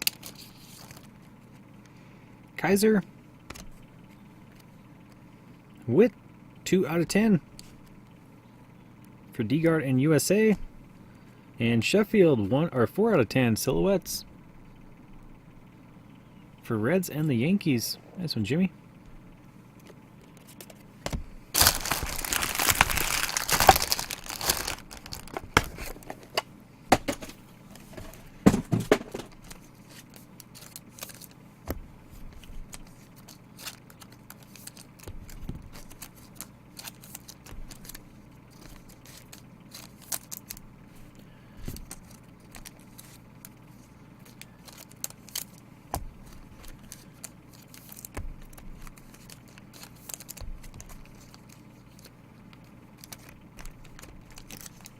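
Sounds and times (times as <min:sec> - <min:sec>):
plastic wrapper crinkling rip: 0:00.0 - 0:01.1, 0:21.5 - 0:26.1, 0:32.6 - 0:40.6, 0:41.8 - 0:43.2, 0:44.2 - 0:52.1, 0:53.0 - 0:54.9
cards and packaging rustling: 0:00.0 - 0:01.6, 0:20.2 - 0:40.7, 0:41.6 - 0:54.9.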